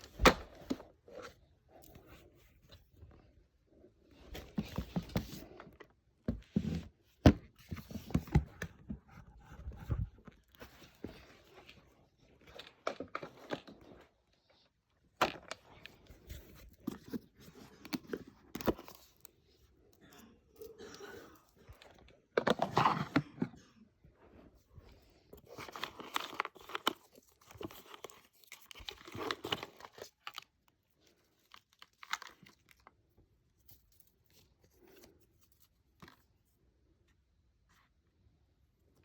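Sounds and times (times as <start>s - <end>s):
packaging rustling and scraping: 21.5s - 23.6s, 24.6s - 32.9s.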